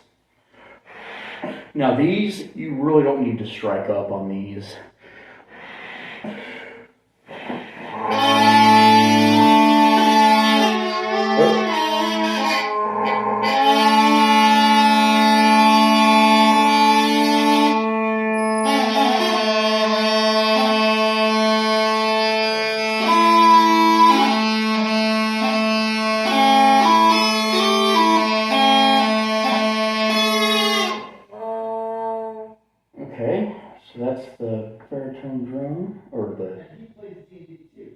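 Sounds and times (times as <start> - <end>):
bagpipe drones: 7.3 - 31.5
bagpipe chanter notes: 7.3 - 32.6.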